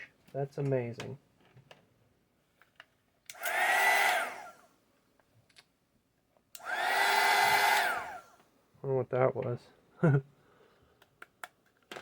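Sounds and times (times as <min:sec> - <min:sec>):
heat gun fan whirring: 0:03.3 - 0:04.6, 0:06.6 - 0:08.4.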